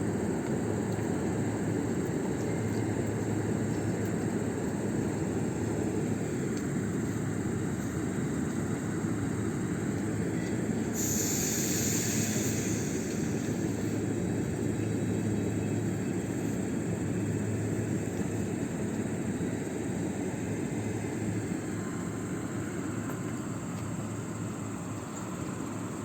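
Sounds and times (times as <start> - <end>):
electric train rumble and hum: 0.0 - 26.0
sudden high hiss: 10.9 - 14.1.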